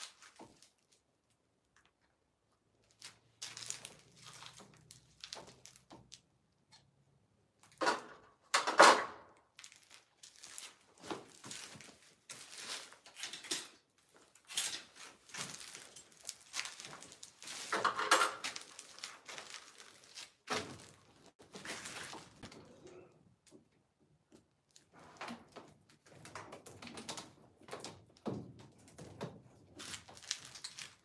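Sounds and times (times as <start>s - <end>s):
metal tools clinking and scraping: 17.5s - 18.7s.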